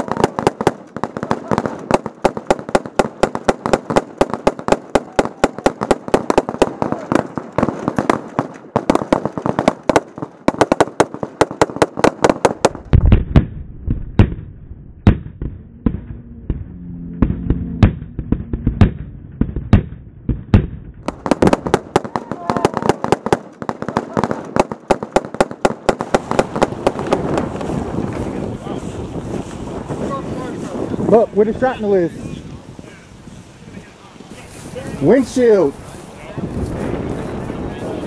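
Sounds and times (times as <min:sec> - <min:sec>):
rapid gunfire: 0:00.0 - 0:13.5, 0:17.2 - 0:27.8.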